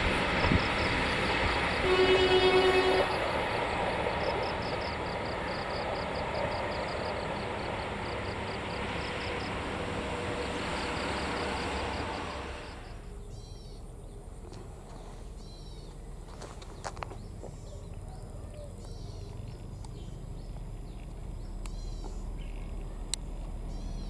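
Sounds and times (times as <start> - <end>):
train wheels clicking on rails: 0.0 - 13.1
bird chirping: 12.8 - 14.2, 15.4 - 16.0, 16.8 - 24.0.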